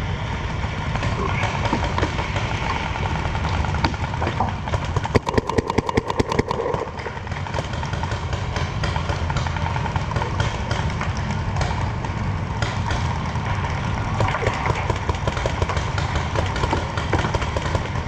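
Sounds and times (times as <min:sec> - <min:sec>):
paintball marker firing: 0:04.9 - 0:08.0.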